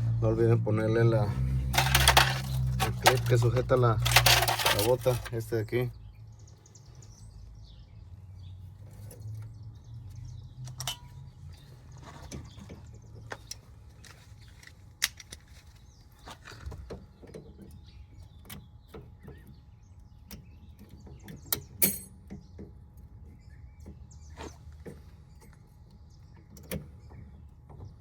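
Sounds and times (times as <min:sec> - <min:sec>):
low steady hum: 0:00.0 - 0:08.6.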